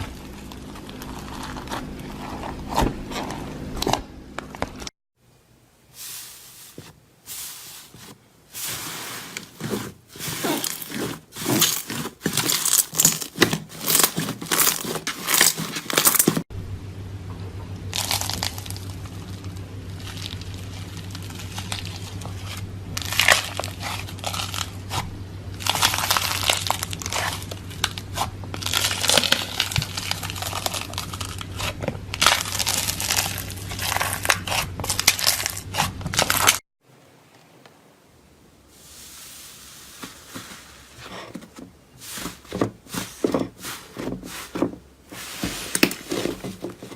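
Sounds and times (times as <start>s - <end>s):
crunchy material being crushed: 0.0s - 3.4s, 6.5s - 16.5s, 17.9s - 36.6s
steady low hum: 0.0s - 36.6s.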